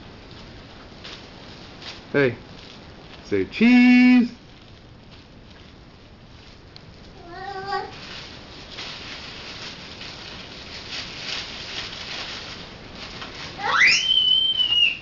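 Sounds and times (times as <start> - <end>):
light pattering: 0.0 - 3.6, 4.3 - 13.7
soft rustling: 0.0 - 15.0
high-pitched voice sound: 7.2 - 8.0
whistle sweeping upward: 13.7 - 15.0.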